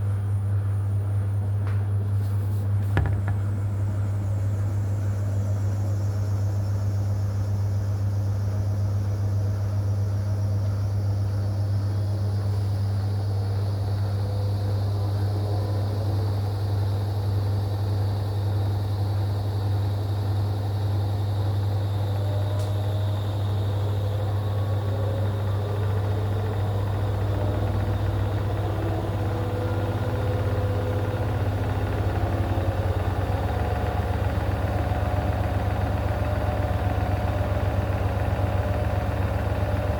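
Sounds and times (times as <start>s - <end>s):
washing machine spinning: 23.4s - 39.9s.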